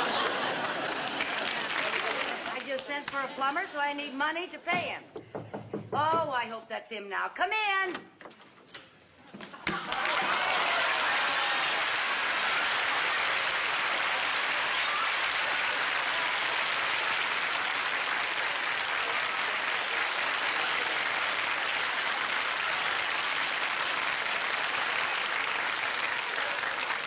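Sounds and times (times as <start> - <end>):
audience applauding: 0.0 - 3.4, 9.6 - 27.0.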